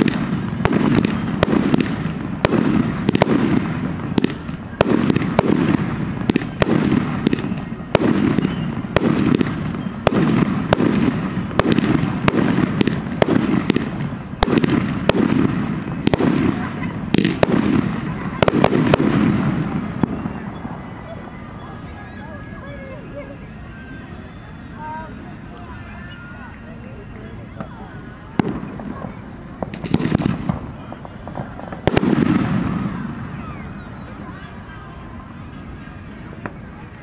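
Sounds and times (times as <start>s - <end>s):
fireworks bangs: 0.0s - 37.0s
low rumble of fireworks: 0.0s - 37.0s.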